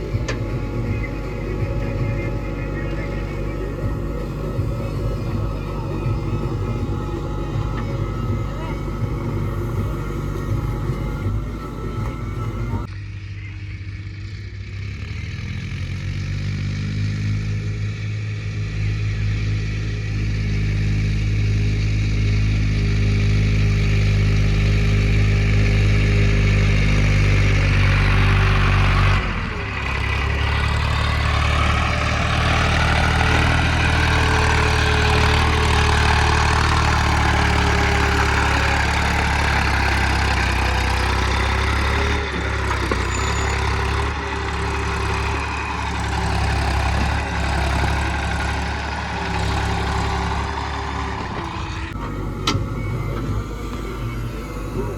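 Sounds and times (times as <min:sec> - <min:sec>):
diesel engine revving: 0:00.0 - 0:54.9.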